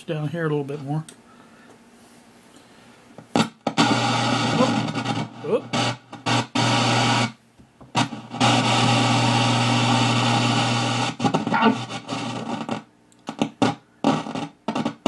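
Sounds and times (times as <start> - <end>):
low electrical hum: 0.0 - 14.7
radio static hiss: 3.3 - 15.0
switch contacts crackling: 3.4 - 7.3, 8.0 - 14.9.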